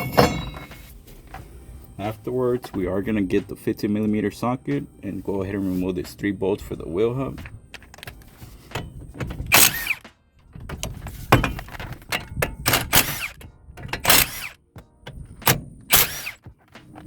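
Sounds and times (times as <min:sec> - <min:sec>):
impact wrench hammering with whine: 0:07.9 - 0:16.6.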